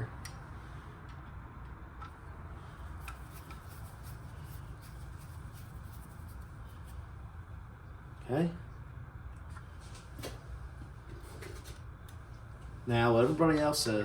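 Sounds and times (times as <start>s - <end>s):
steady low hum: 0.0s - 14.0s
small parts rubbing and clicking: 2.8s - 7.0s.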